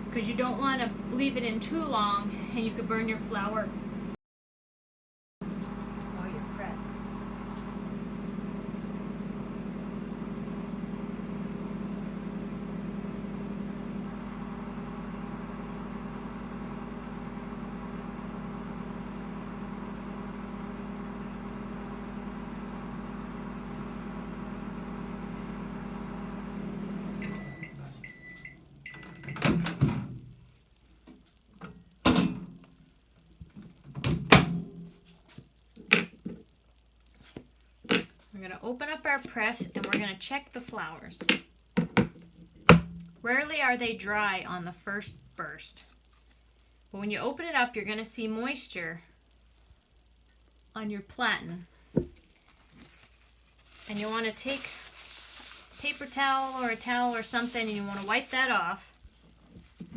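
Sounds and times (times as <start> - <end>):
microwave oven humming: 0.0 - 4.2, 5.4 - 30.8
microwave beeps: 7.9 - 29.8.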